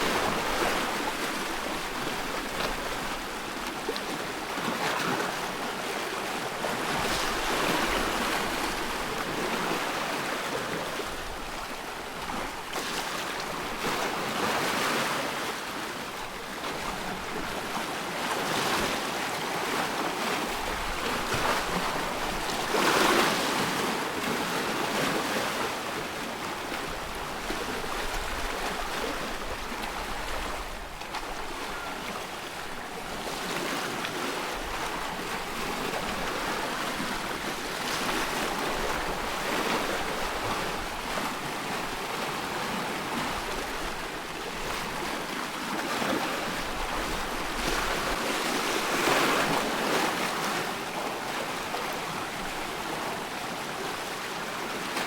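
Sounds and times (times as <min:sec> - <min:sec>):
small waves splashing: 0:00.0 - 0:55.0.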